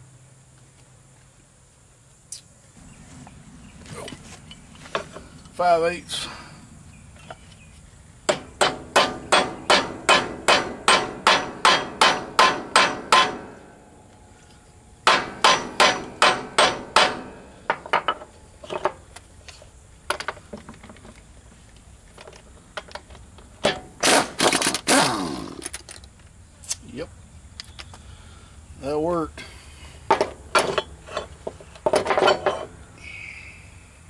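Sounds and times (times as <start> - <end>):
hammer striking steel: 8.3 - 14.0, 15.0 - 18.3.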